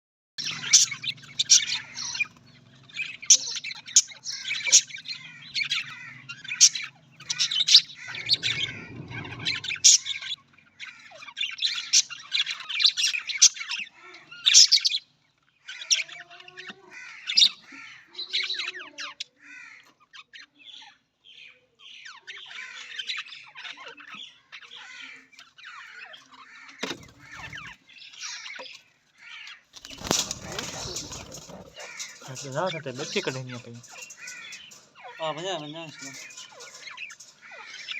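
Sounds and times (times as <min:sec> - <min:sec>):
budgerigars chattering: 0:00.4 - 0:15.1, 0:22.2 - 0:37.9
low rumble: 0:07.4 - 0:10.3.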